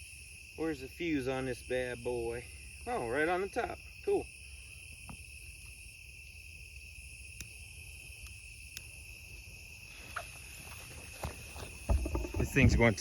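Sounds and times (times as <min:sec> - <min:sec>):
crickets chirping: 0:00.0 - 0:13.0.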